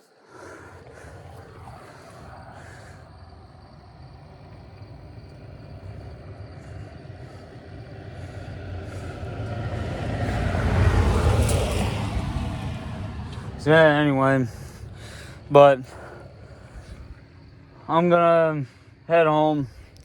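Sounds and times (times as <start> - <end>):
vehicle engine rumbling: 0.4 - 20.0.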